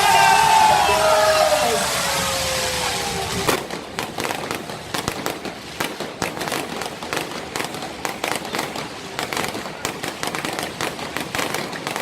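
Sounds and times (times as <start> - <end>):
falling firework whistle: 0.0 - 3.6
fireworks cracking and popping: 0.0 - 12.0.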